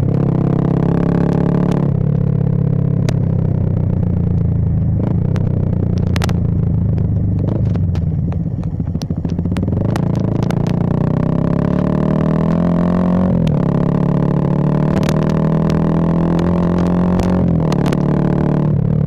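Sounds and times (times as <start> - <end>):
motorcycle engine running: 0.0 - 19.0
sharp clicks and knocks: 5.0 - 11.0, 14.8 - 18.2.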